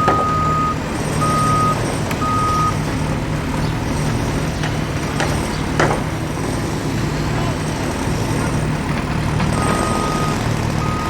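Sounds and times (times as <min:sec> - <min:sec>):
knocks: 0:00.0 - 0:00.7, 0:04.6 - 0:06.2
reversing alarm beeping: 0:00.0 - 0:03.1, 0:09.4 - 0:11.0
truck engine running: 0:00.0 - 0:11.0.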